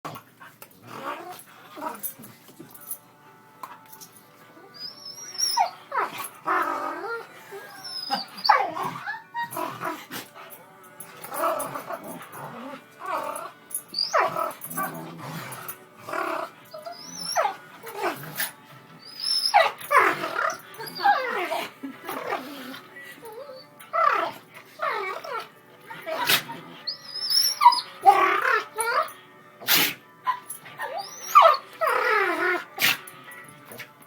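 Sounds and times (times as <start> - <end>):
dog sneezing: 29.6 - 30.0, 32.8 - 33.0.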